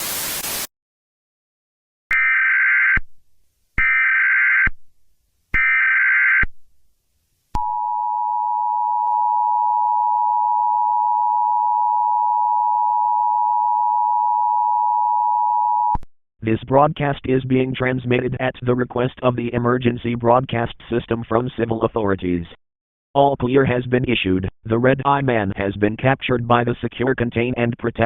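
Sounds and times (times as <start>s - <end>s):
static burst: 0.0s - 0.7s.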